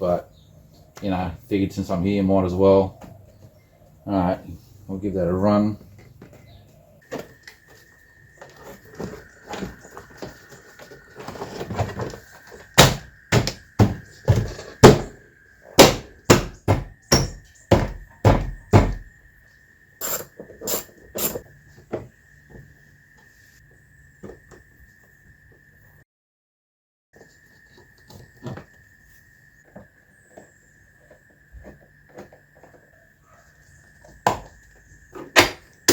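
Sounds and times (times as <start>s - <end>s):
knocks on car door: 15.8s - 19.0s.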